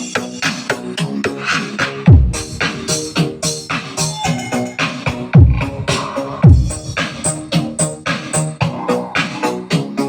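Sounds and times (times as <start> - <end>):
electronic dance music: 1.5 - 10.0
deep bass hit dropping in pitch: 2.1 - 2.8.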